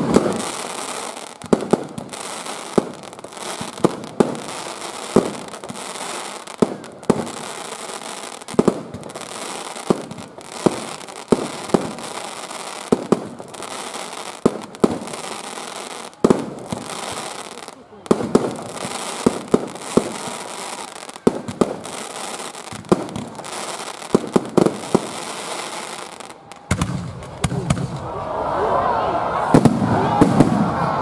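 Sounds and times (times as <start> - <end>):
crackle of bursting fireworks: 0.0 - 28.1, 29.4 - 31.0
firework bangs: 0.0 - 28.1, 29.4 - 31.0.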